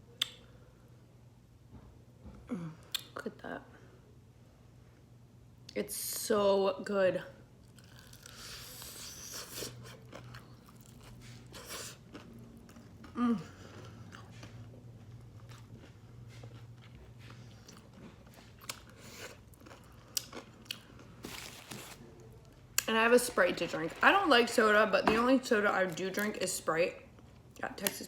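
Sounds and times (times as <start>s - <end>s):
chewing and crunching: 7.6s - 22.9s.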